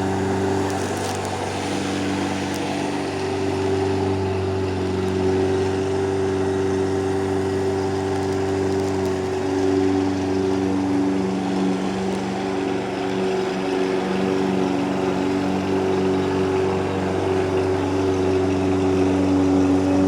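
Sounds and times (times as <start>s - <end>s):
engine running: 0.0s - 20.0s.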